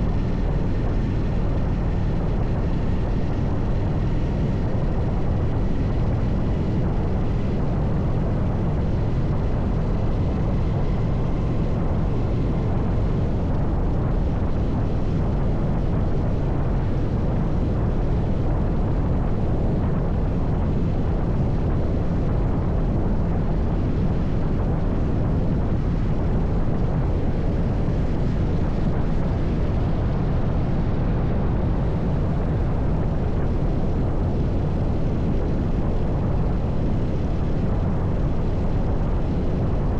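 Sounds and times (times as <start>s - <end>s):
vehicle rumbling: 0.0s - 39.9s.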